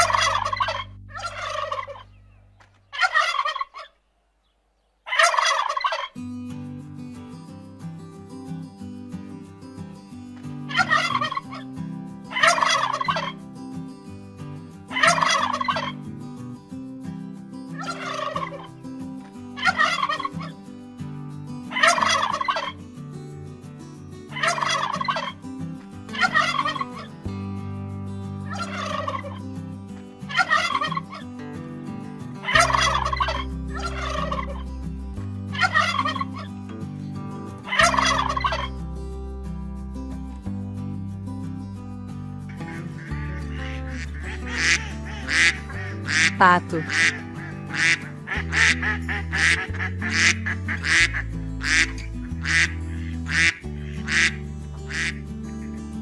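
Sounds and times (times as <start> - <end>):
turkey gobbling: 0.0 - 4.0, 5.1 - 6.2, 10.8 - 11.6, 12.3 - 13.3, 14.9 - 15.9, 17.9 - 18.6, 19.6 - 20.5, 21.7 - 22.7, 24.4 - 25.3, 26.2 - 26.8, 28.5 - 29.4, 30.4 - 31.2, 32.4 - 34.6, 35.6 - 36.5, 37.7 - 38.7, 42.7 - 55.1.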